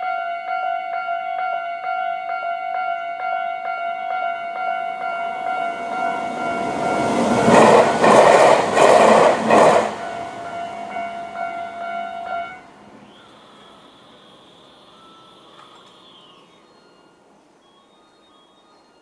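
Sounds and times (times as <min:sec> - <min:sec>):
level crossing electronic alarm: 0:00.0 - 0:19.0
train wheels clattering: 0:05.2 - 0:13.8.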